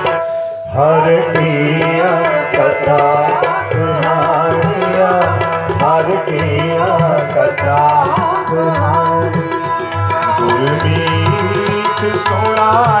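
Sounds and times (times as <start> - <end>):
melodic instrument line: 0.0 - 1.7
person singing: 0.0 - 13.0
tabla playing a steady rhythm: 0.0 - 13.0.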